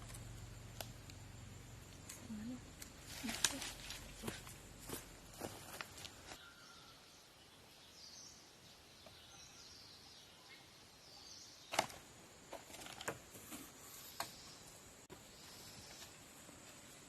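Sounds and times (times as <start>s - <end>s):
faint bird chirps: 6.3s - 11.9s.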